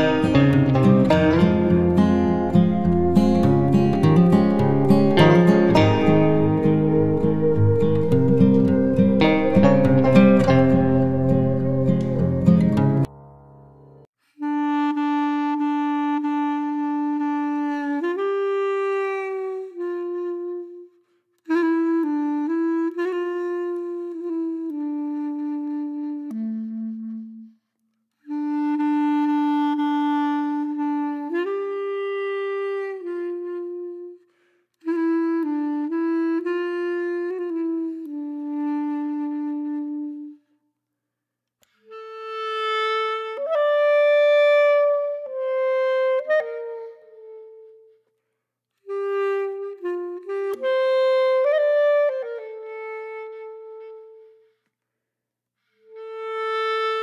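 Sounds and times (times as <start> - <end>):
solo woodwind slow melody: 0.0 - 13.1, 14.2 - 40.7, 41.6 - 54.7, 55.6 - 57.0.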